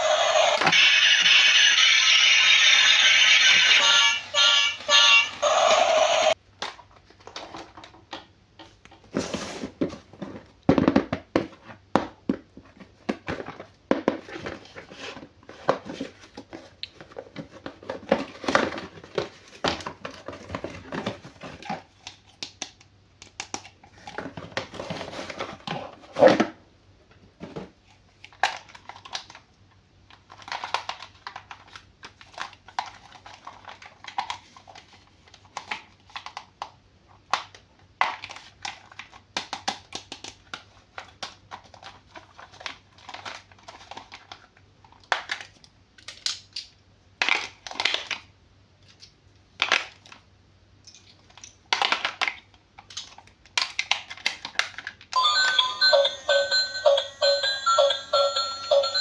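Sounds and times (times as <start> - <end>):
electronic tune: 0.0 - 6.4.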